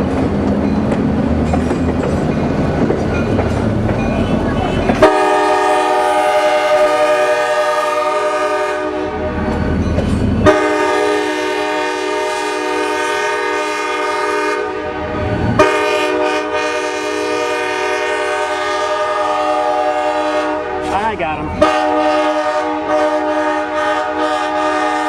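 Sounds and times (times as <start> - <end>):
passing train rumble: 0.0 - 25.0
locomotive air horn blasts: 4.1 - 9.5, 10.4 - 25.0.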